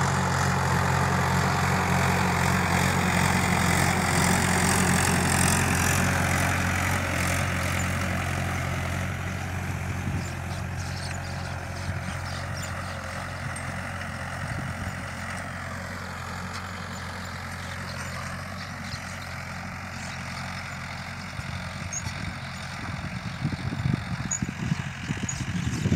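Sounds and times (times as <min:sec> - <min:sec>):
tractor engine droning: 0:00.0 - 0:25.9.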